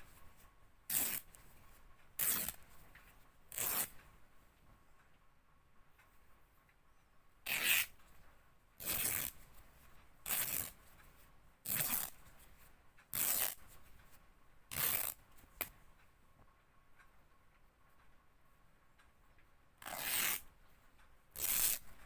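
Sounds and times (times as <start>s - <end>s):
fabric ripping: 0.9s - 1.2s, 2.2s - 2.6s, 3.5s - 3.9s, 7.5s - 7.9s, 8.8s - 9.3s, 10.3s - 10.7s, 11.7s - 12.1s, 13.2s - 13.6s, 14.7s - 15.2s, 19.8s - 20.4s, 21.4s - 21.8s.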